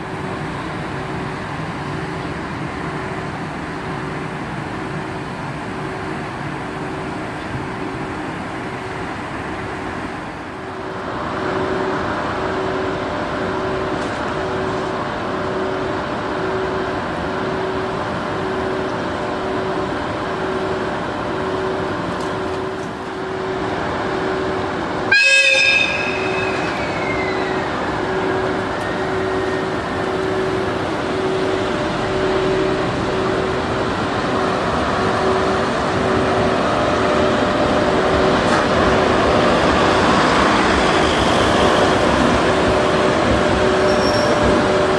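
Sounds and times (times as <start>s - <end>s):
electric locomotive rumbling: 0.0s - 44.9s
level-crossing warning bell: 0.0s - 44.9s
locomotive horn blast: 25.1s - 33.8s, 38.5s - 44.9s.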